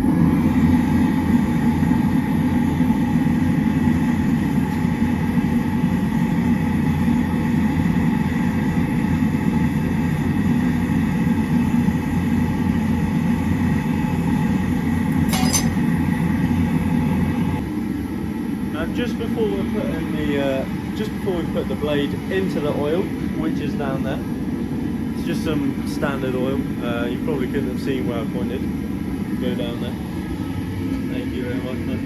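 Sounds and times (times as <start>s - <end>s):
faint steady whine: 0.0s - 32.0s
metal clink: 15.2s - 15.9s.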